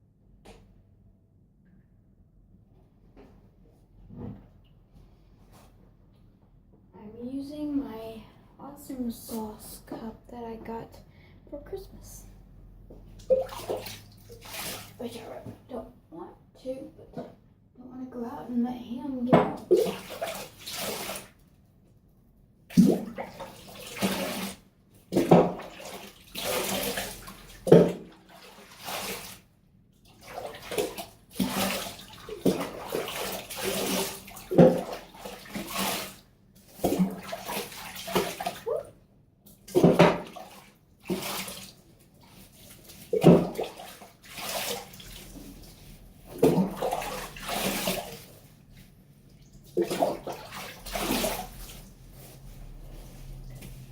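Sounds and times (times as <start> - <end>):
water splashing over dog in bathtub: 13.2 - 15.8, 19.4 - 21.4, 22.7 - 39.0, 39.6 - 53.9.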